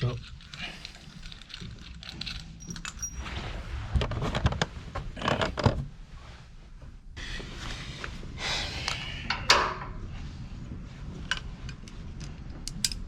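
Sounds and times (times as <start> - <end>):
metal tools clinking: 0.1 - 3.2.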